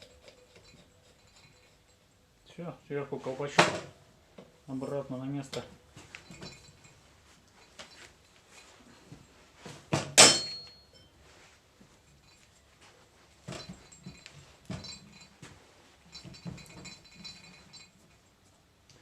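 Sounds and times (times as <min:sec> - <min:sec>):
ringing metal clank: 0:10.1 - 0:11.2.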